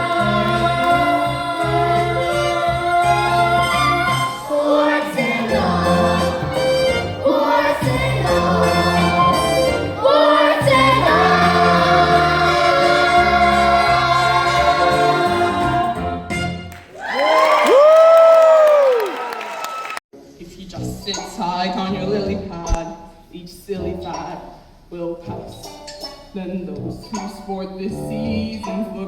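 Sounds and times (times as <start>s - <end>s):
voices singing together: 0.0s - 16.5s
instrumental accompaniment: 0.0s - 16.8s.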